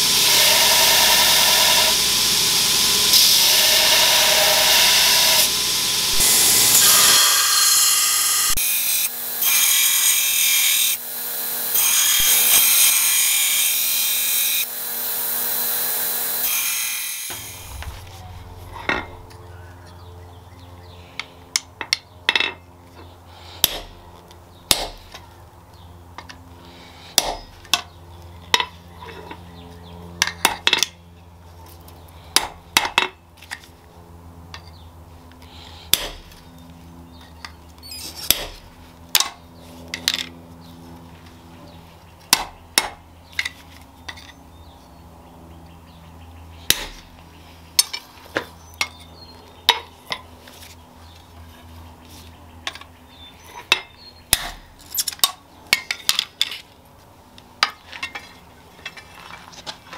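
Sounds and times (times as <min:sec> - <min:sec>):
low hum: 0:17.2 - 0:47.8.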